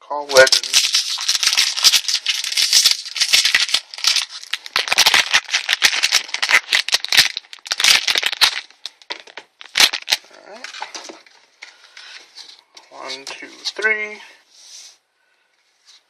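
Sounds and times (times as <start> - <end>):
foil wrapper crinkling and tearing: 0.1 - 11.2.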